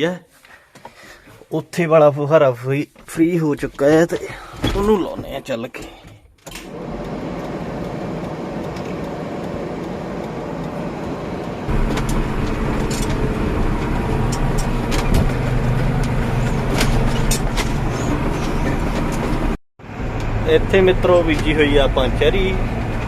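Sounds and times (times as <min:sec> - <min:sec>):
tractor engine running: 0:06.7 - 0:23.0.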